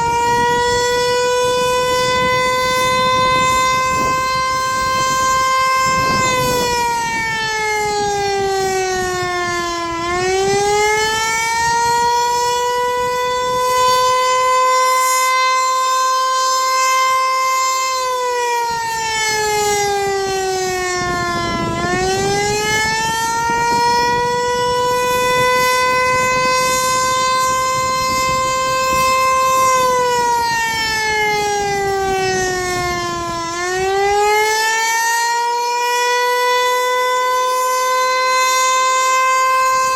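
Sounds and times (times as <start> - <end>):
outdoor warning siren wailing: 0.0 - 39.9.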